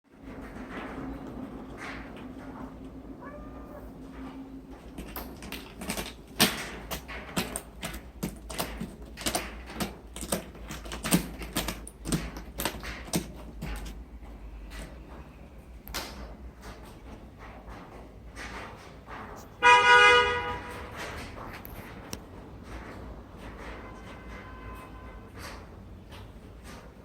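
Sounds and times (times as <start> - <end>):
cat meowing faintly: 3.2 - 4.5.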